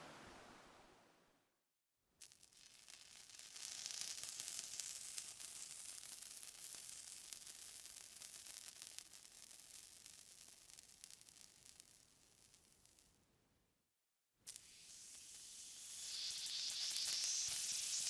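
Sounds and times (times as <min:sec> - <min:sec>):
crackling hissing water: 0:02.2 - 0:12.6, 0:14.5 - 0:18.0.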